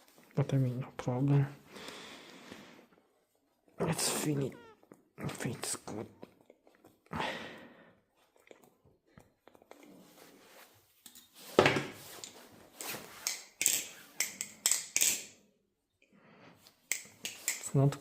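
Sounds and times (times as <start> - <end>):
butterfly knife handles clacking: 13.3 - 15.3, 16.9 - 17.8.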